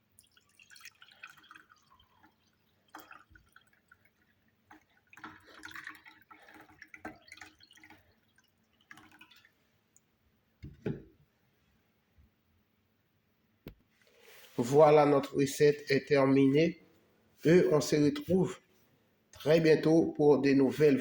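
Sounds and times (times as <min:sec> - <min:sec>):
liquid dripping and splashing: 0:00.0 - 0:10.1
soft knock: 0:10.6 - 0:11.1.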